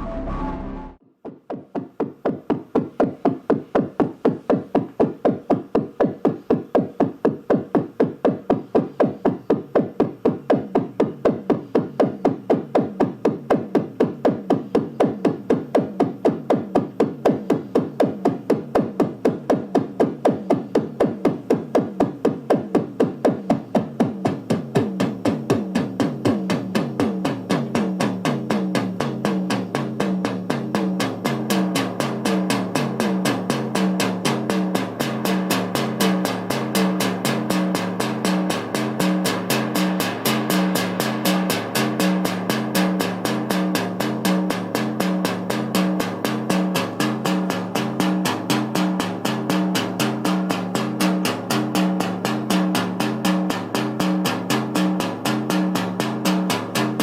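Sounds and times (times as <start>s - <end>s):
lower synth melodic line: 0.0s - 1.0s, 35.8s - 57.0s
synthesizer sequenced pattern: 0.0s - 57.0s.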